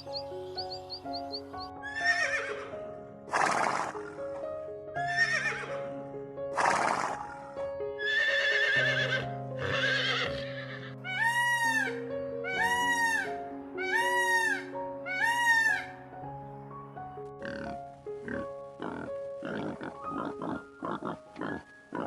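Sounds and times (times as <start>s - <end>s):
background music with sustained notes: 0.0s - 22.0s
animal calls: 8.1s - 15.9s.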